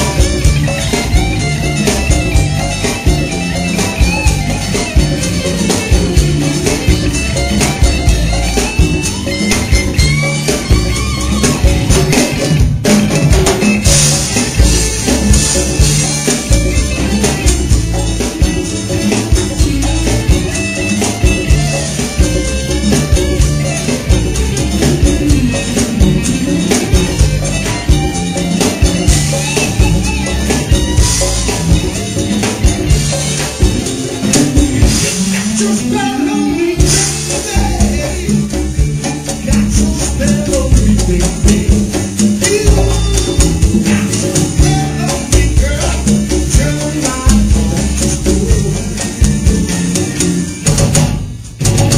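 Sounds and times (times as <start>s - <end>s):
drum kit: 0.0s - 51.9s
live rock band playing: 0.0s - 51.9s.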